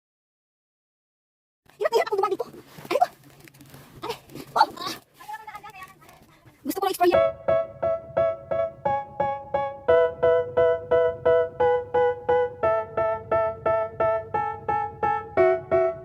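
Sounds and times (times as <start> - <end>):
electric piano chord riff: 7.2 - 16.0.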